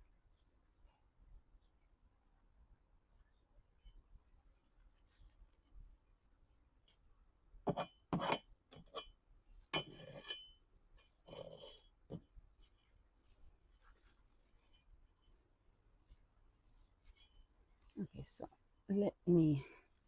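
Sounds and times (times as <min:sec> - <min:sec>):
metal trowel clinking and scraping: 0:07.7 - 0:09.2, 0:09.8 - 0:12.2.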